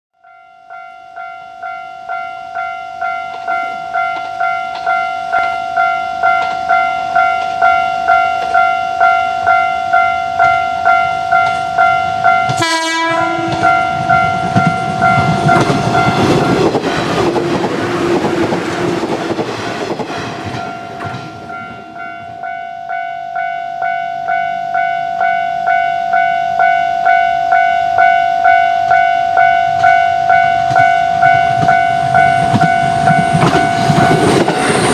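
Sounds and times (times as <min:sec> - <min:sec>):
level-crossing warning bell: 0:00.2 - 0:34.9
electric train rumbling: 0:00.8 - 0:34.9
train horn blast: 0:11.4 - 0:16.5.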